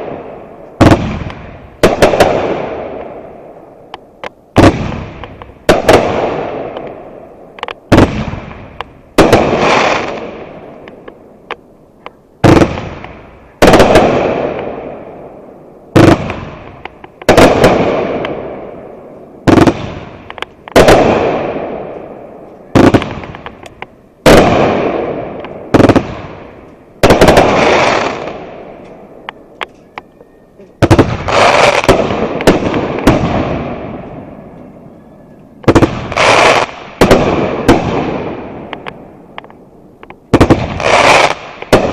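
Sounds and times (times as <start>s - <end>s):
fireworks bangs: 0.0s - 41.9s.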